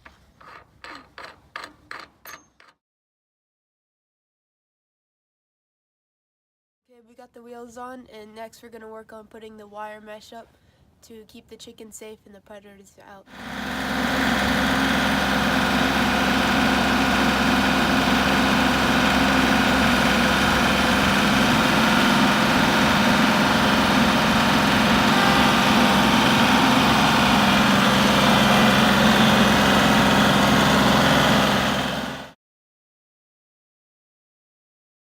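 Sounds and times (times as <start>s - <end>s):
engine idling: 13.3s - 32.4s.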